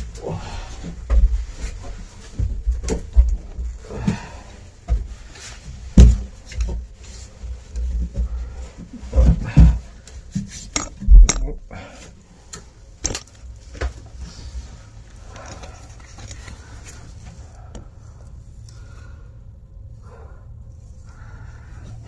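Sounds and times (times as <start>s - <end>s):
heavy thumps: 8.0s - 11.8s
hard objects clinking and knocking: 10.7s - 11.6s.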